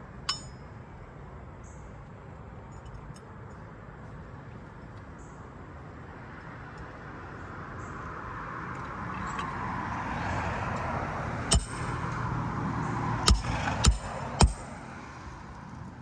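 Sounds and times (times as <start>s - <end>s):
passing vehicle road noise: 6.1s - 16.0s
hammer striking nail: 11.5s - 12.0s, 13.3s - 14.8s.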